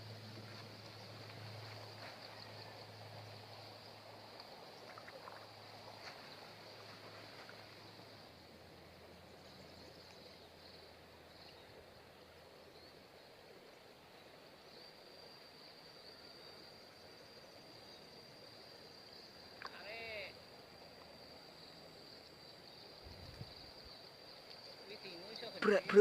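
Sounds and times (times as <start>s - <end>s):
faint ticks: 4.3s - 7.8s, 19.5s - 20.0s, 24.4s - 24.8s.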